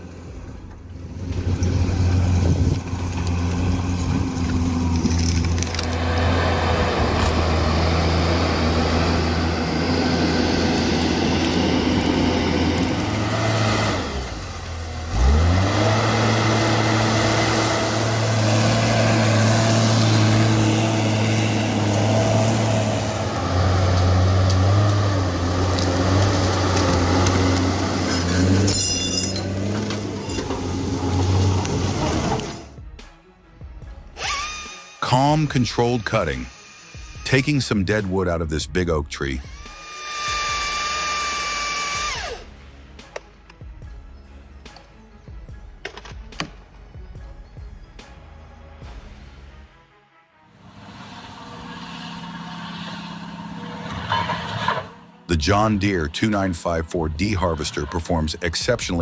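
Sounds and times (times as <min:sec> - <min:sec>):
heavy machine engine running: 0:00.0 - 0:32.8, 0:50.6 - 0:55.5.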